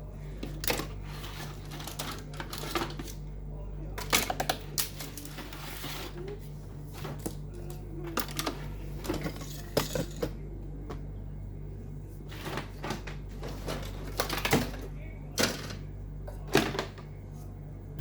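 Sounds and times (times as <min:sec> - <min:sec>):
steady low hum: 0:00.0 - 0:18.0
small hard toys clattering: 0:00.4 - 0:03.2, 0:07.0 - 0:10.4.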